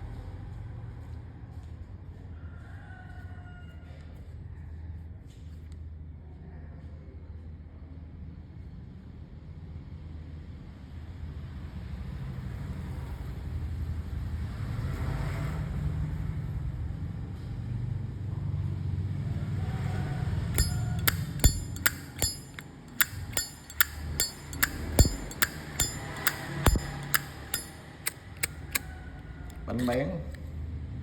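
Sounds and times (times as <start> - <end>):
lighter lid clacking: 20.6 - 28.8.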